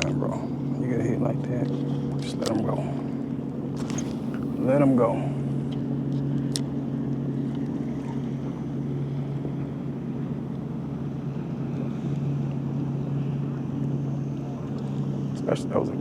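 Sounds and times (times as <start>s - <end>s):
boat motor humming: 3.8s - 5.0s
wind noise on microphone: 3.8s - 5.0s.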